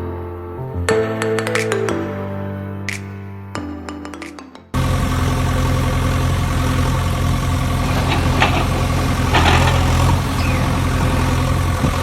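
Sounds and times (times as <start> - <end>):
engine idling with low hum: 4.8 - 12.0.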